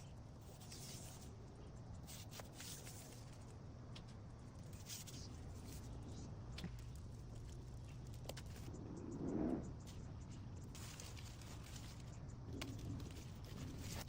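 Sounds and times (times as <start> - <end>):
low steady hum: 0.0 - 14.0
velcro tape rustling and scratching: 0.4 - 1.4.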